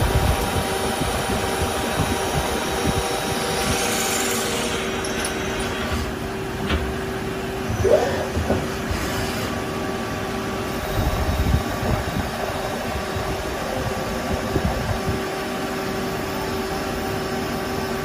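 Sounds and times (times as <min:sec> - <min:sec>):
lathe machining hum: 0:00.0 - 0:18.0.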